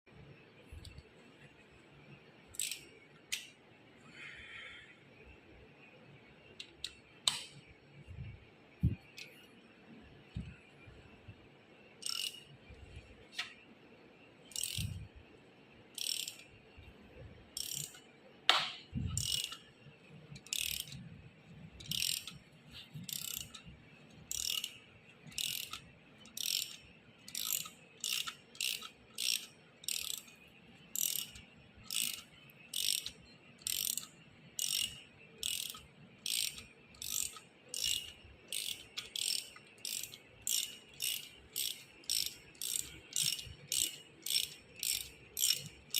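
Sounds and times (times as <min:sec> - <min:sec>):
ratchet wrench clicking: 0:02.6 - 0:03.5, 0:12.0 - 0:12.5, 0:14.5 - 0:15.0, 0:16.0 - 0:16.5, 0:17.6 - 0:18.1, 0:19.1 - 0:19.7, 0:20.4 - 0:21.0, 0:21.8 - 0:22.4, 0:23.0 - 0:45.9.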